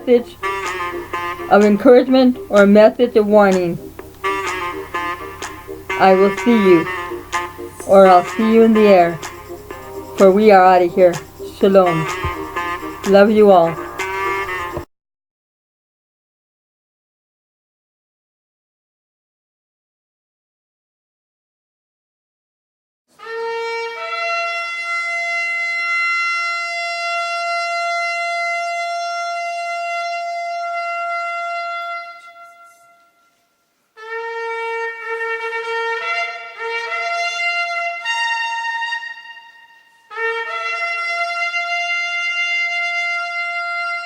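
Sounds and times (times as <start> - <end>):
shofar blasts: 0.0 - 2.6, 3.2 - 14.9, 23.2 - 44.0.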